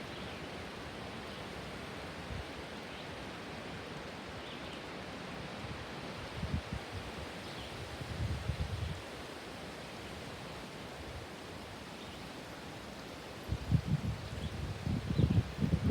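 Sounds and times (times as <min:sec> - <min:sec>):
wind rushing through leaves: 0:00.0 - 0:15.9
wind buffeting microphone: 0:13.4 - 0:15.9.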